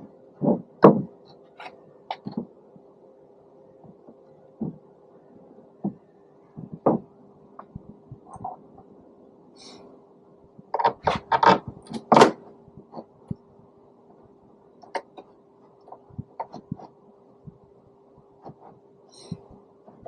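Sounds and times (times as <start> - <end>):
faint steady hum: 0.0 - 20.0
parts knocking and clattering: 0.4 - 2.6, 5.8 - 8.8, 10.6 - 13.4, 14.8 - 16.9.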